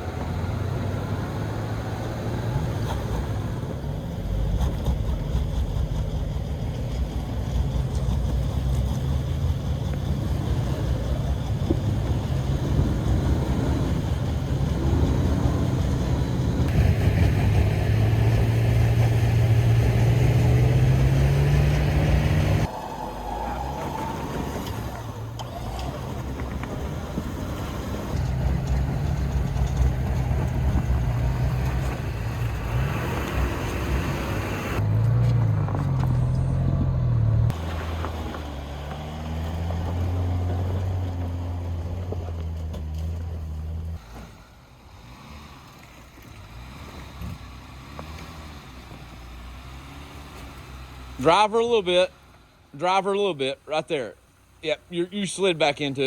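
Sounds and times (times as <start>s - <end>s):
engine revving under load: 0.0s - 52.6s.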